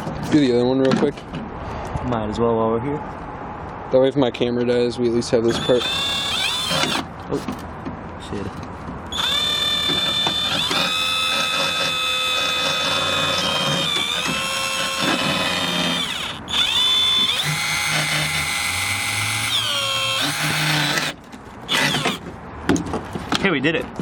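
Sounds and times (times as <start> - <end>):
power drill driving a screw: 5.5 - 7.1, 9.1 - 22.2.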